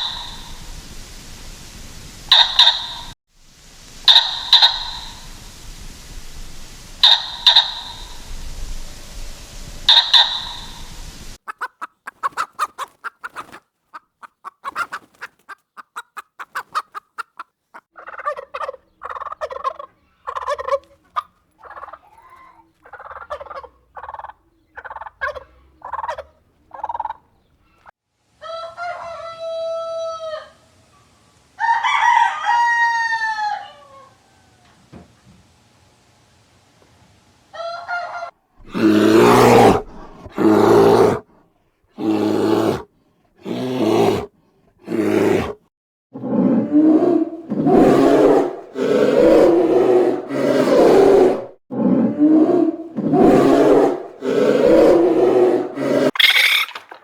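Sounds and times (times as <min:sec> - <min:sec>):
chickens clucking: 0:00.0 - 0:00.6, 0:04.0 - 0:05.4, 0:07.0 - 0:08.4, 0:09.8 - 0:30.5, 0:56.1 - 0:57.0
rooster crowing: 0:28.4 - 0:30.7, 0:31.6 - 0:34.8.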